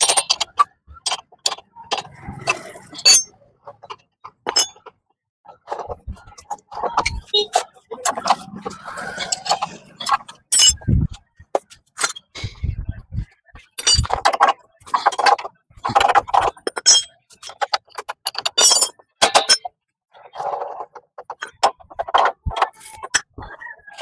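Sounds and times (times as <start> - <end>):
metal tools clinking together: 0.0 - 3.3, 4.5 - 4.8, 9.2 - 10.8, 13.8 - 15.4, 16.0 - 19.7.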